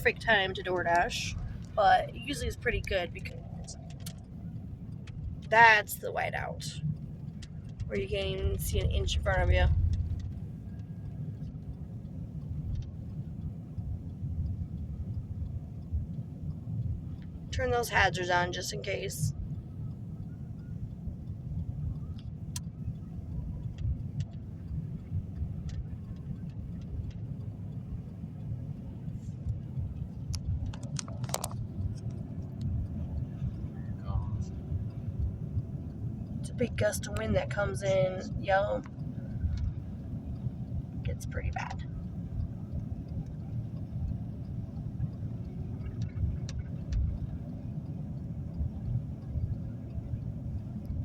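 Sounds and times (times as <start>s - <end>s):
road and engine rumble: 0.0s - 51.0s
wind: 0.0s - 51.0s
sharp clicks: 0.1s - 5.6s, 6.8s - 37.6s.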